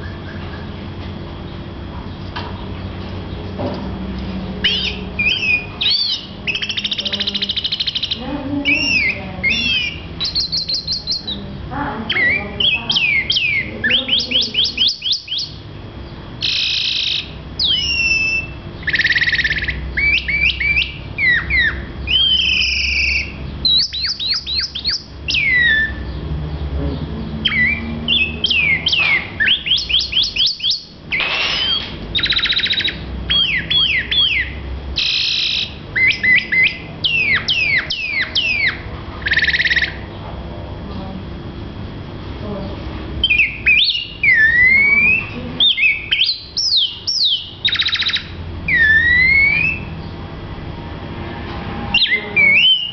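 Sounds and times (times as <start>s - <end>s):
bird singing varied song: 0.0s - 40.2s, 42.6s - 50.3s, 51.9s - 52.9s.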